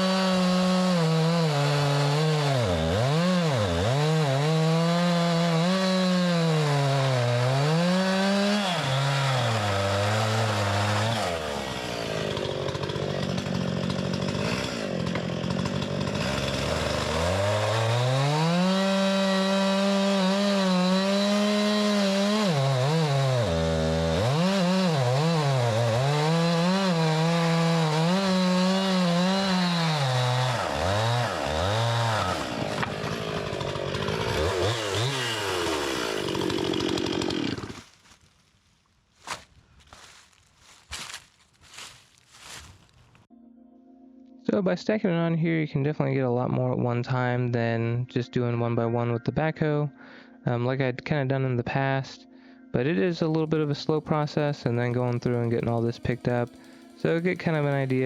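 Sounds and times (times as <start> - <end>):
chainsaw cutting wood: 0.0 - 38.2, 53.0 - 58.0.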